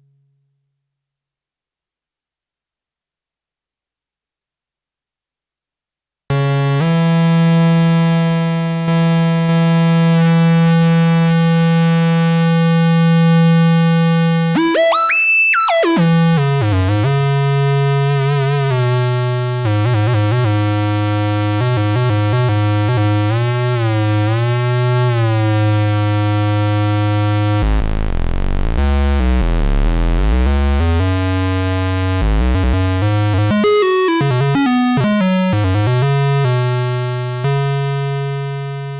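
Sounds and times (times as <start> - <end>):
analogue synthesizer low note: 14.0 - 34.5.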